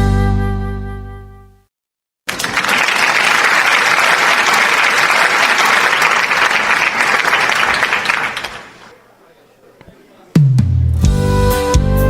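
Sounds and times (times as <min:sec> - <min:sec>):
audience applauding: 0:02.3 - 0:09.0.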